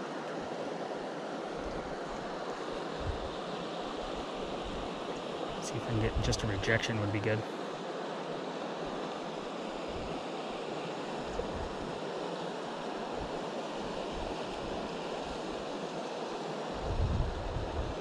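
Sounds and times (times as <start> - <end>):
river water rushing: 0.0 - 5.8
wind buffeting microphone: 3.0 - 3.3, 16.8 - 18.0.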